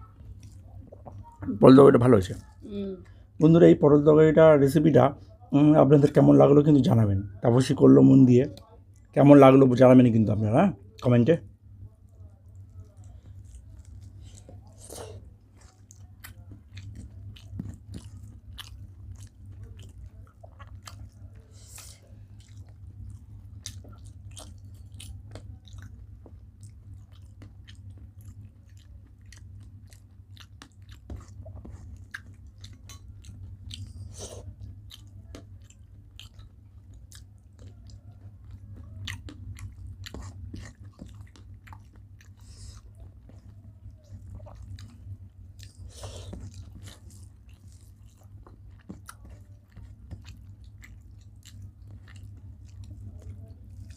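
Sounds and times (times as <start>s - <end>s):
chewing and biting food: 0.1s - 1.4s, 12.4s - 53.9s.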